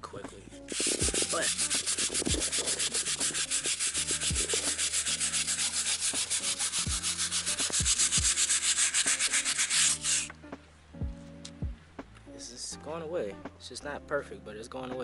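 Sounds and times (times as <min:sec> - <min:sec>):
scrub brush scrubbing wet concrete: 0:00.7 - 0:10.3.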